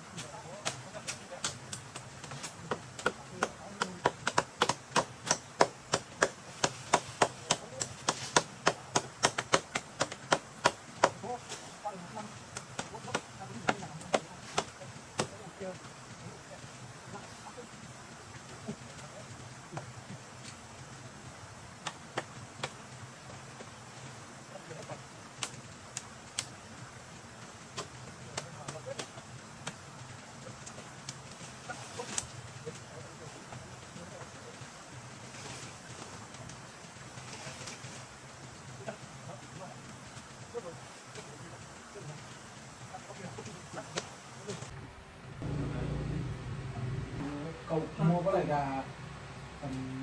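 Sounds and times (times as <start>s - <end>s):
sharp chopping knocks: 2.2s - 11.2s.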